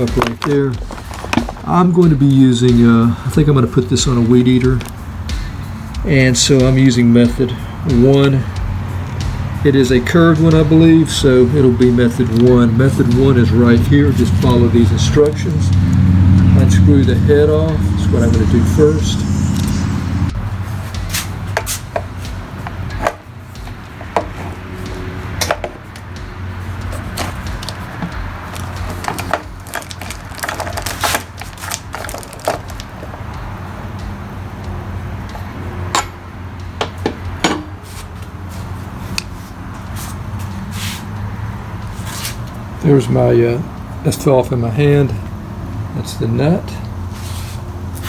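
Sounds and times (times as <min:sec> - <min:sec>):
plastic parts clicking and rattling: 0:00.0 - 0:01.7, 0:26.9 - 0:33.2
low hum: 0:15.6 - 0:20.7.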